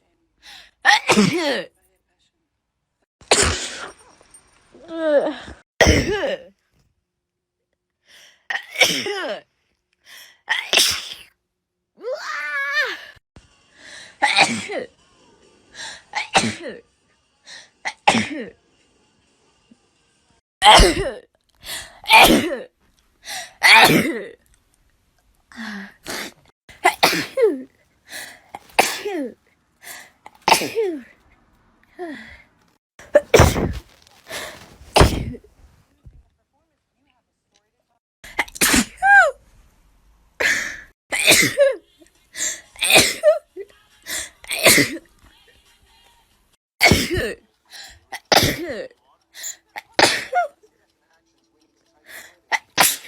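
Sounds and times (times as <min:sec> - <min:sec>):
person sneezing: 0:03.3 - 0:04.0, 0:05.4 - 0:06.4, 0:08.5 - 0:09.4, 0:10.5 - 0:11.3, 0:14.2 - 0:14.8, 0:20.6 - 0:22.6, 0:23.3 - 0:24.2, 0:25.6 - 0:27.6, 0:28.2 - 0:31.0, 0:33.0 - 0:35.5, 0:38.3 - 0:39.4, 0:44.1 - 0:45.0, 0:46.8 - 0:50.5, 0:52.2 - 0:53.0.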